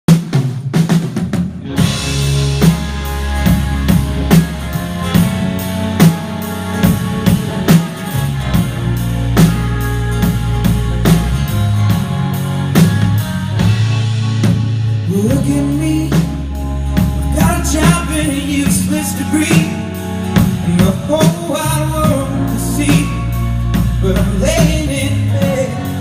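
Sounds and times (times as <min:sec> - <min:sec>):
drum kit beat: 0:00.1 - 0:26.0
bass and guitar: 0:01.0 - 0:26.0.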